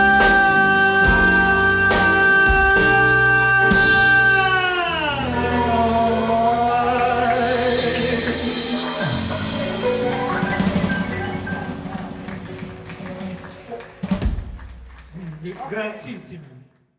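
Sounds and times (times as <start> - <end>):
steady drum beat: 0.0 - 4.5, 5.2 - 15.5
man singing with vibrato: 0.0 - 10.4
live band music: 0.0 - 15.6.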